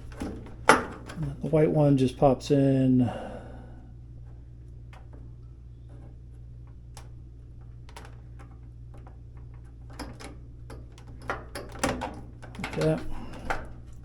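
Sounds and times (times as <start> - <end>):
steady low hum: 0.0 - 14.0
plastic parts clicking and tapping: 5.9 - 14.0.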